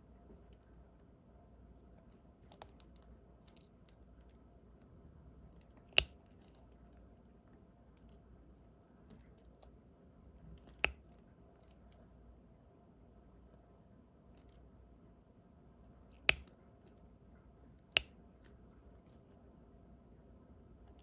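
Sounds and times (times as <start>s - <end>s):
pen ticking and tapping: 16.2s - 16.6s.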